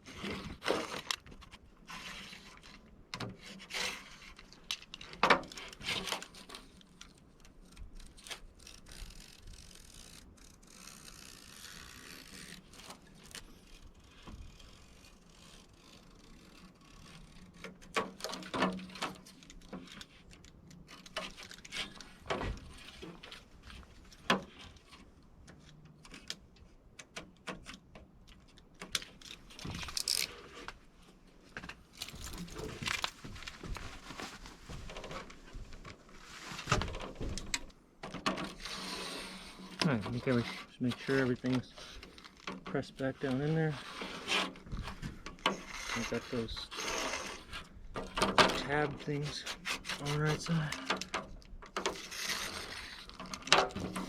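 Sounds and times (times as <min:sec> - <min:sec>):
soft scraping: 0:29.6 - 0:37.3, 0:38.5 - 0:47.8.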